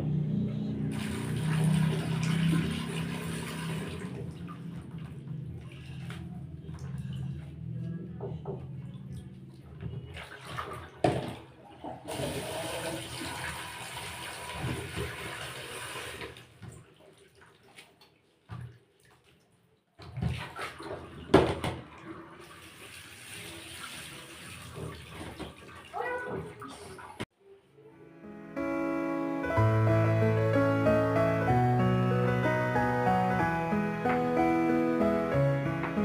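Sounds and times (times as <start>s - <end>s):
tap water running into basin: 0.9s - 5.7s, 9.8s - 18.8s, 20.0s - 27.2s.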